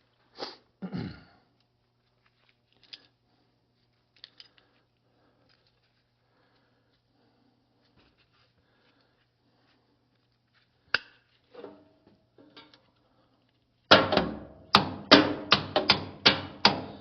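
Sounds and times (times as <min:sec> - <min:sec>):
hammer striking steel: 0:13.9 - 0:17.0.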